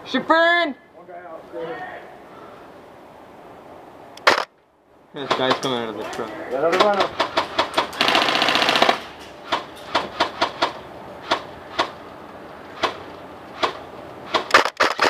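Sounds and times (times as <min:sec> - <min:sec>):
airsoft gun full-auto burst: 0:07.3 - 0:09.1.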